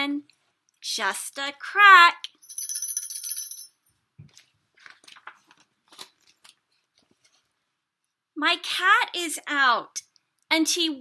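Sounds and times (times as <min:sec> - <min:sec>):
small jingle bell jingling: 0:02.4 - 0:03.9
faint soft taps and rustles: 0:04.2 - 0:07.6.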